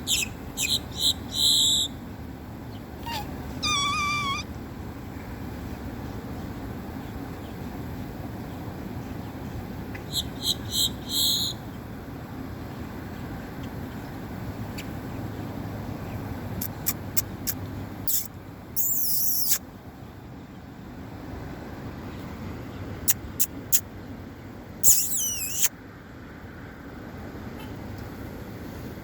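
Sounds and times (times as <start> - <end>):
low background rumble: 0.0 - 27.4
bird wavering whistle: 0.1 - 2.0, 3.0 - 4.5, 18.1 - 19.6, 24.8 - 25.7.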